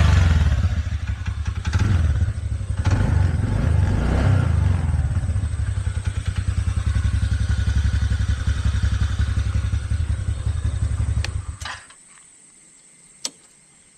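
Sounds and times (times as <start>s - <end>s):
scooter engine idling: 0.0s - 11.8s
short clicks: 12.8s - 13.6s.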